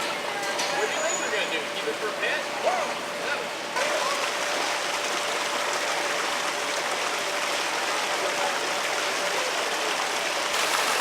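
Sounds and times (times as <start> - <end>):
running water rushing: 3.8 - 11.0.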